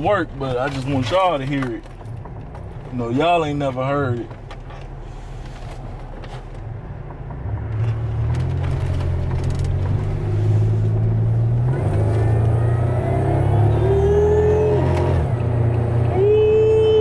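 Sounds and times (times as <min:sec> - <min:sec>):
engine accelerating hard: 0:00.0 - 0:17.0
supercharger whine rising: 0:07.8 - 0:16.6.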